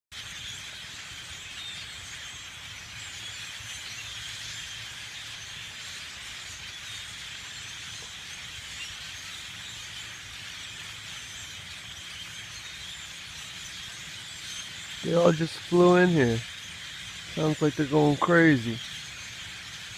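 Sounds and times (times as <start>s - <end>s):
flock of birds calling: 0.2s - 19.9s.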